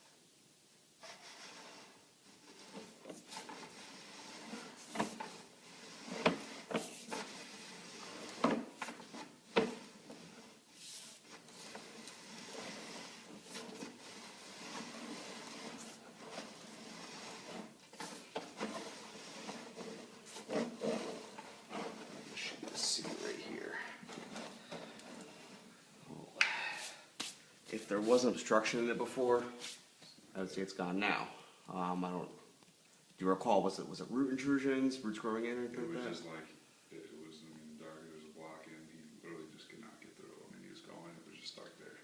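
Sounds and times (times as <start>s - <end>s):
rubbing and scraping: 1.0s - 25.8s, 27.2s - 29.9s.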